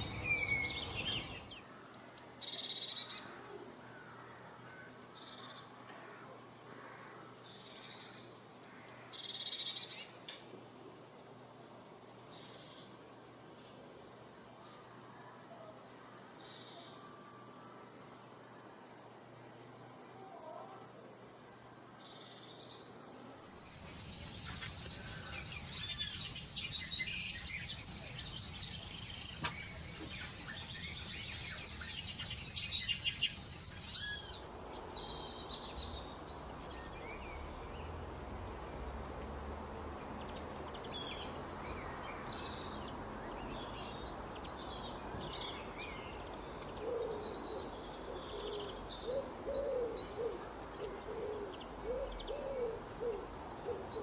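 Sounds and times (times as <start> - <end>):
birds chirping: 0.0 - 5.8, 21.3 - 54.0
steady hiss: 23.5 - 46.8.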